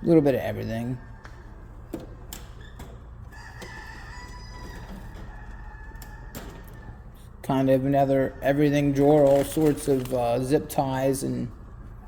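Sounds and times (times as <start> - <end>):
steady low hum: 0.0 - 12.0
chickens calling: 0.6 - 7.4.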